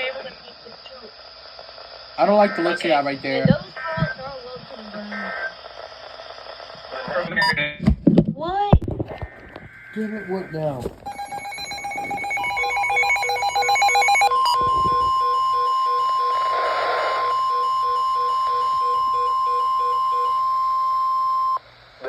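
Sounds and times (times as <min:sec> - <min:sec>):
steady high warning tone: 0:09.9 - 0:21.6
low pulsing beep: 0:11.1 - 0:21.6
trilling bell-like alarm: 0:11.1 - 0:21.6.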